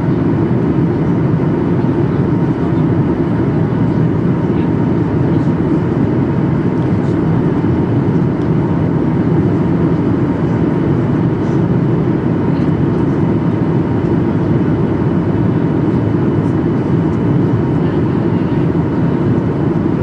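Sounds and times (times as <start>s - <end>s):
aeroplane cabin engine hum: 0.0s - 20.0s.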